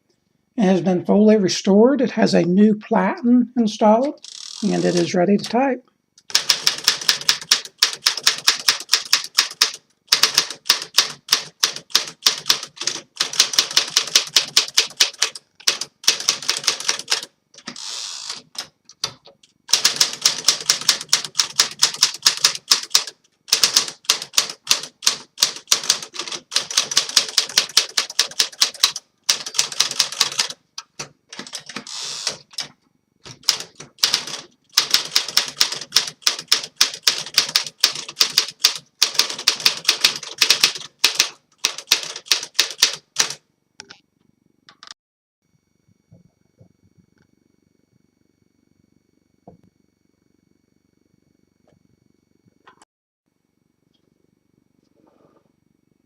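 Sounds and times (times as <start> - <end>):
typewriter keystrokes: 6.2 - 17.8, 18.4 - 43.4.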